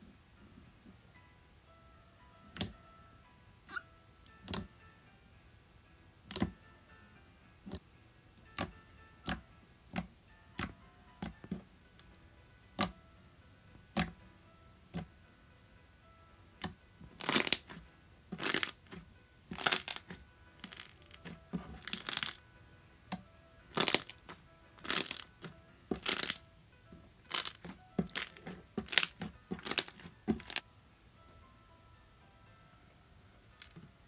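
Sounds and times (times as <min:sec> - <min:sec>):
soft background music: 0:00.0 - 0:34.0
slime squishing: 0:16.6 - 0:22.4, 0:23.7 - 0:26.4, 0:27.2 - 0:30.6.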